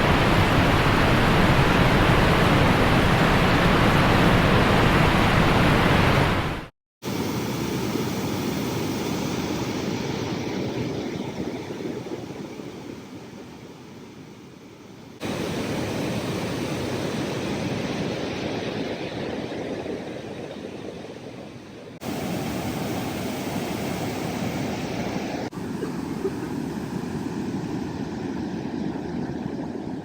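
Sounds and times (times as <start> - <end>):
waterfall rushing: 0.0 - 6.7.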